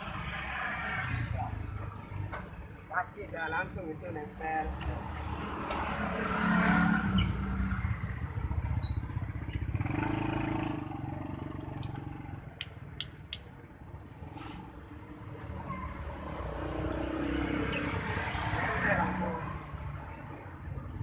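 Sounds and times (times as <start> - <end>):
motorcycle engine rumbling: 6.8 - 14.7
high chirps: 7.1 - 9.1
sharp clicks: 12.6 - 13.8.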